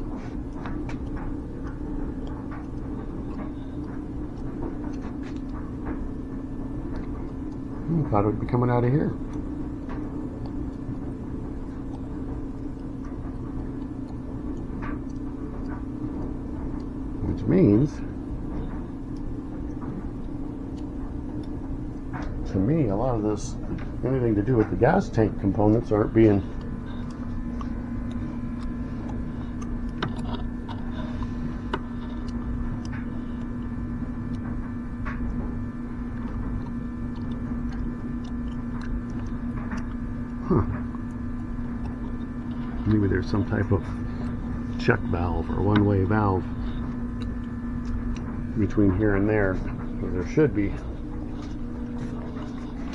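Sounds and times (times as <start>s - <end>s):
smoke machine humming: 0.0s - 52.9s.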